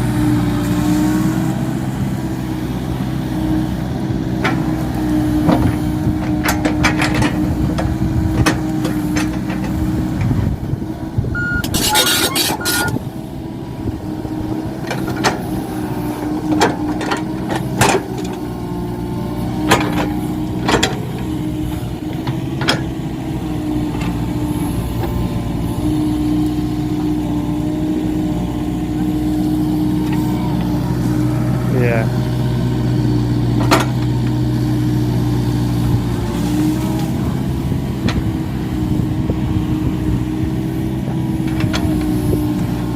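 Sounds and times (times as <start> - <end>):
diesel engine running: 0.0 - 42.9
short beeps: 11.4 - 13.0.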